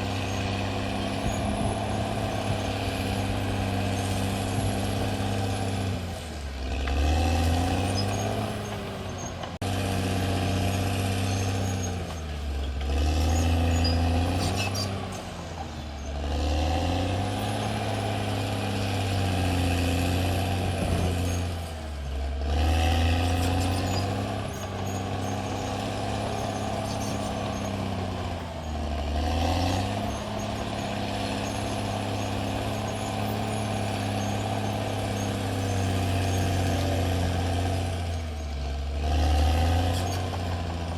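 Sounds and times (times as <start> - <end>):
bulldozer diesel engine under load: 0.0 - 40.9.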